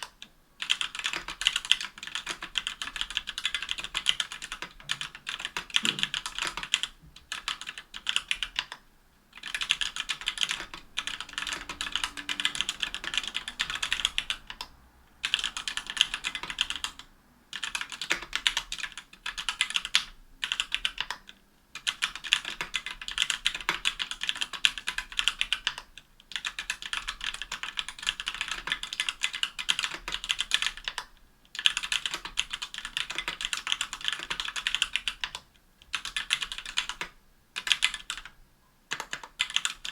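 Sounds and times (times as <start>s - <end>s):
fast typing key clacks: 0.6s - 8.8s, 15.2s - 17.0s, 21.8s - 38.3s.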